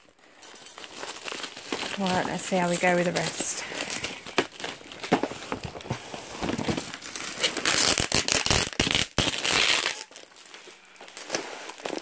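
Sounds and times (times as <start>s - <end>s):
plastic wrap crinkling: 0.0s - 12.0s.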